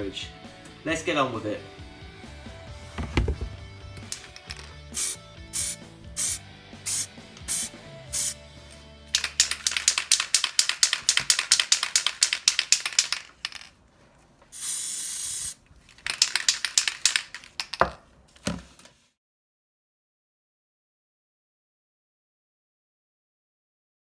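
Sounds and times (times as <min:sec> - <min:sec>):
knocks: 0:03.0 - 0:03.6
spray can ball rattling: 0:04.0 - 0:08.4, 0:09.2 - 0:13.8, 0:14.5 - 0:17.9
spray paint hissing: 0:04.2 - 0:08.4, 0:09.2 - 0:13.3, 0:14.6 - 0:17.3.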